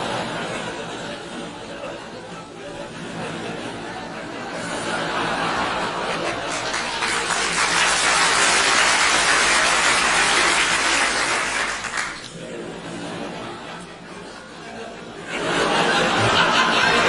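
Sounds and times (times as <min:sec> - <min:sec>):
audience laughing: 0:00.0 - 0:17.0
applause: 0:06.1 - 0:12.4.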